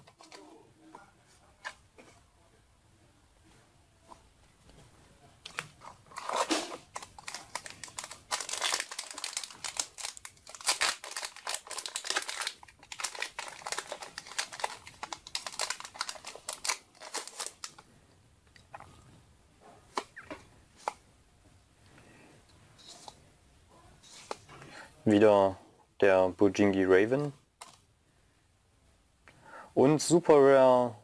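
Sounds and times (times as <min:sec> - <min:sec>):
foil wrapper crinkling: 0:06.1 - 0:17.8.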